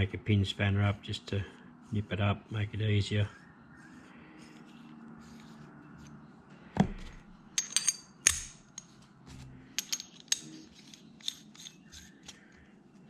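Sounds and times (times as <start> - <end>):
sharp metallic clinks: 7.6 - 8.8
metal parts knocking: 7.6 - 8.9.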